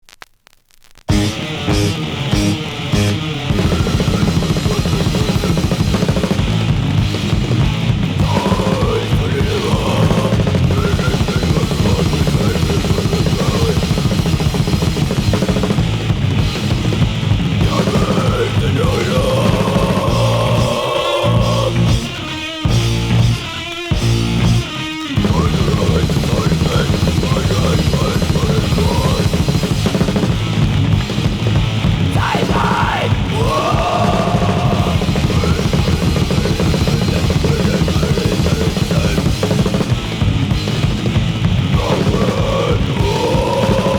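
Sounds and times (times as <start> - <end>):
heavy punk metal band: 1.1 - 43.9.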